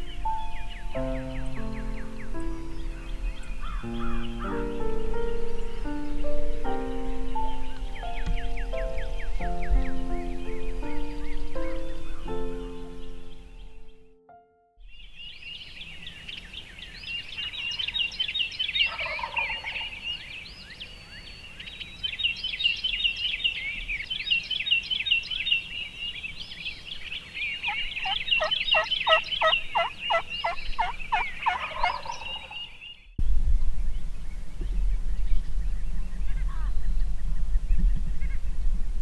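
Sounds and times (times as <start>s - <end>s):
chorus of high chirping calls: 15.5s - 33.2s
turkey gobbling: 18.8s - 20.1s, 27.7s - 32.8s.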